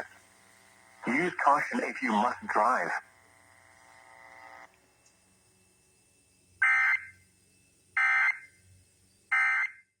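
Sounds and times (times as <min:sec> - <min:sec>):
digital data tone bursts: 0:06.6 - 0:07.2.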